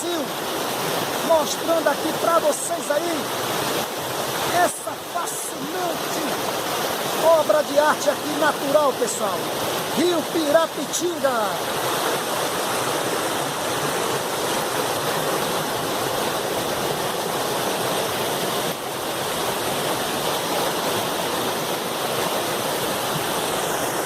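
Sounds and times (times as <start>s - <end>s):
river water rushing: 0.0s - 24.0s.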